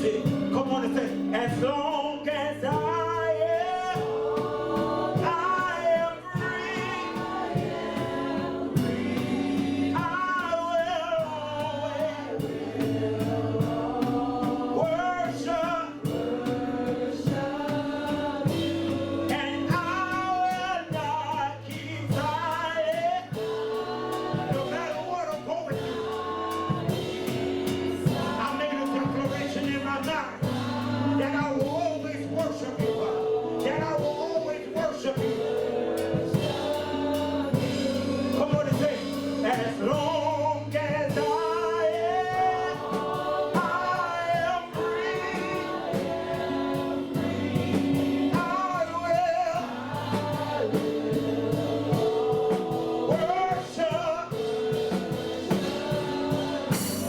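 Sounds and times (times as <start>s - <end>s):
congregation singing worship song: 0.0s - 57.0s
instrumental accompaniment with beat: 0.0s - 57.0s.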